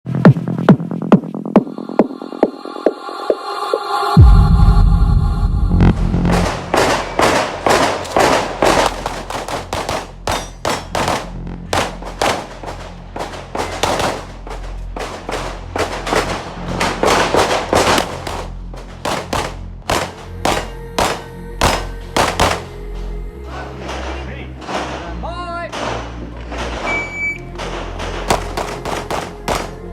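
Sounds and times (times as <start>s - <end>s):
background music with low beat: 4.2s - 23.5s
handgun shots: 6.3s - 22.8s, 28.2s - 29.9s.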